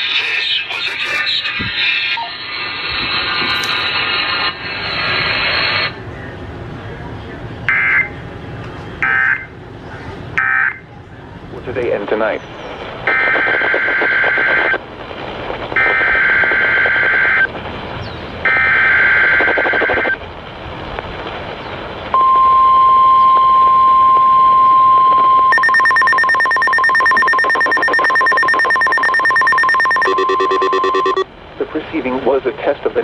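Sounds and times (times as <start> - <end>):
steady warning alarm tone: 18.5 - 20.2, 22.2 - 31.3
buzzing higher tone: 22.2 - 31.3
warbling digital data screech: 25.5 - 31.3.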